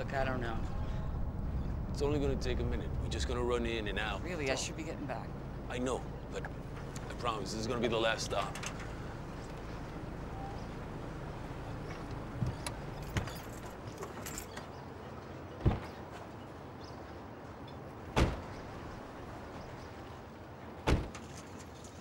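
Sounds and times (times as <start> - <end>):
car doors shutting: 11.8 - 14.7, 18.2 - 18.6, 20.8 - 21.3.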